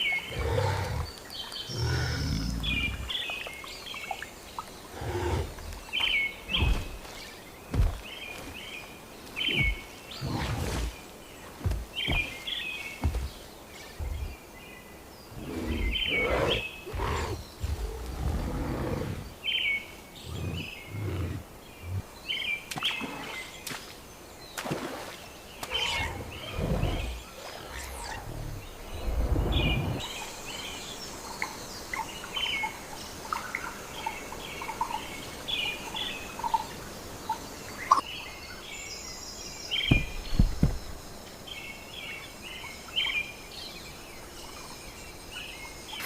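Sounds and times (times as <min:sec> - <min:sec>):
birds chirping: 0:00.0 - 0:46.0
deep rumbles: 0:28.2 - 0:30.1.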